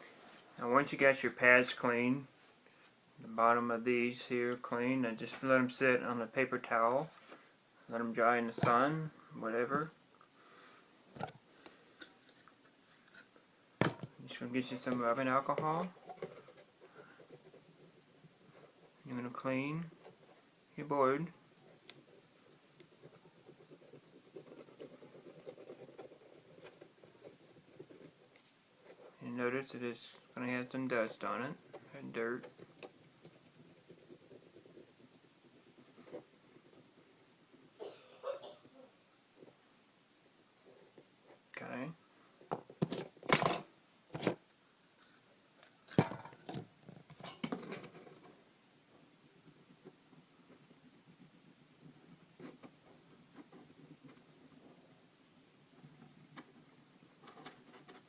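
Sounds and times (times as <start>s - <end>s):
plastic parts knocking and rubbing: 8.5s - 9.0s, 42.4s - 44.4s, 45.6s - 48.4s.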